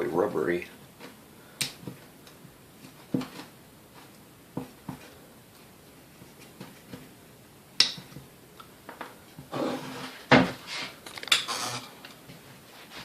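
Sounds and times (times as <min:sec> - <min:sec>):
clicks and knocks of small parts: 0:11.0 - 0:11.5.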